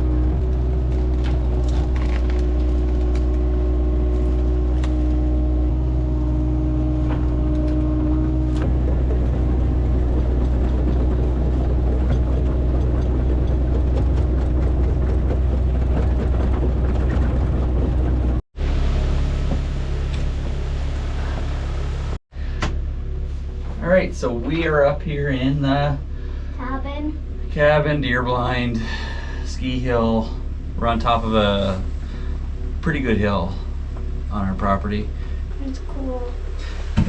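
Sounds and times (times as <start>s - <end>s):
excavator diesel engine running: 0.0s - 22.2s
humming tone: 0.0s - 23.8s.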